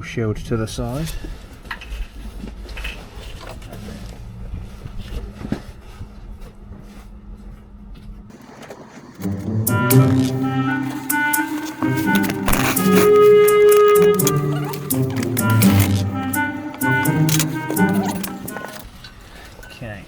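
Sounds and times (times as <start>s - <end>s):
music: 9.2s - 18.8s.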